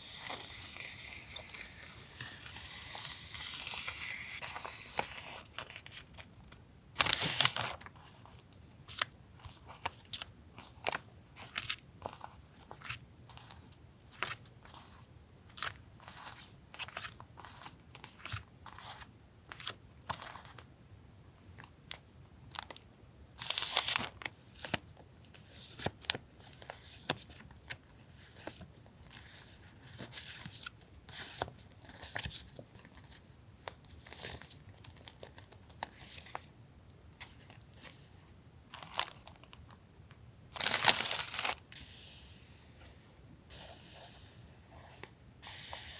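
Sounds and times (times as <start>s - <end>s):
packaging crinkling and rustling: 7.0s - 11.0s, 38.7s - 39.7s, 40.5s - 41.6s.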